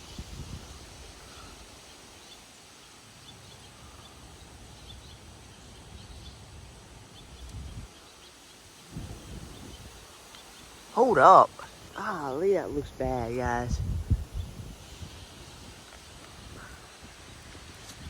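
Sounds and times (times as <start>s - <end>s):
wind buffeting microphone: 0.0s - 1.9s, 7.1s - 8.1s, 8.7s - 18.0s
wind gusting: 0.0s - 2.6s, 4.4s - 18.0s.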